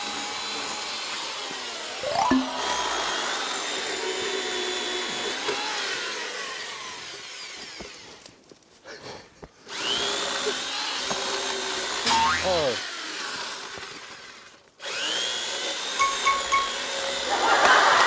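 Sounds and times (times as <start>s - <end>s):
electric chainsaw cutting log: 3.1s - 8.2s, 9.7s - 16.1s.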